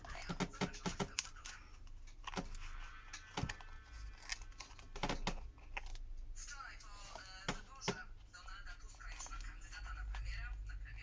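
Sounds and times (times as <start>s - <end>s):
plastic card clicking and scraping: 0.0s - 6.1s.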